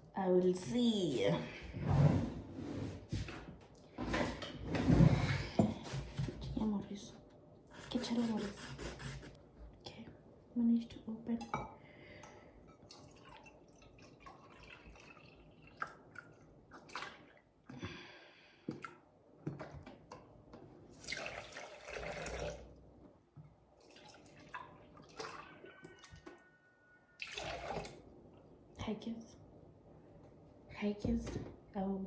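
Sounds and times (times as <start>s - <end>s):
liquid pouring into a pot: 12.7s - 17.4s, 20.9s - 22.8s, 23.8s - 26.4s, 27.2s - 28.1s.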